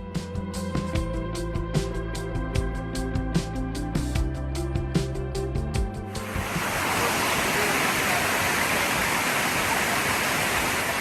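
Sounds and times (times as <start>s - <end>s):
background music: 0.0s - 6.7s
waterfall rushing: 6.1s - 11.0s.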